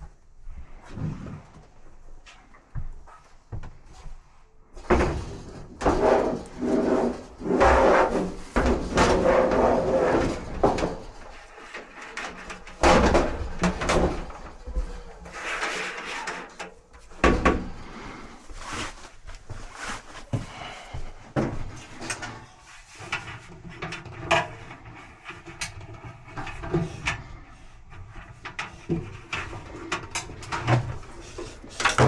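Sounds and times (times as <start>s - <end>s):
dryer parts clunking: 4.8s - 18.4s, 28.6s - 32.0s
scraping and rubbing: 4.9s - 20.3s.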